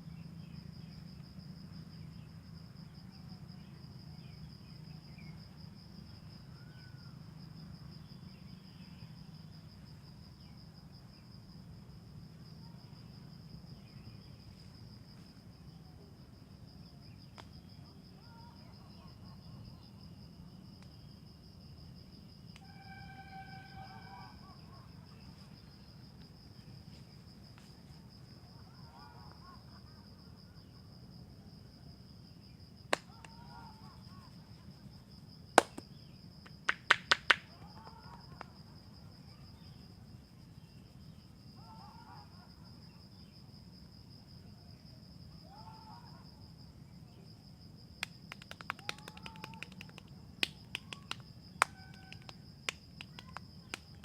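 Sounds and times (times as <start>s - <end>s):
high insect drone: 0.0s - 54.0s
hands snapping and clicking: 32.9s - 33.4s, 35.6s - 37.4s, 48.0s - 54.0s.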